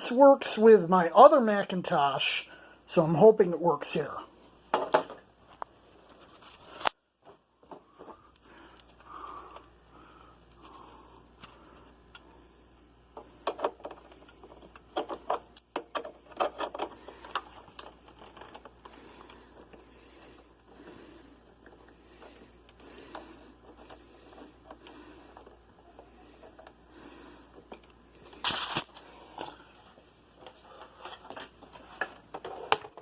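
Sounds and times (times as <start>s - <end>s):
cables and plugs clicking into connectors: 13.1s - 19.8s.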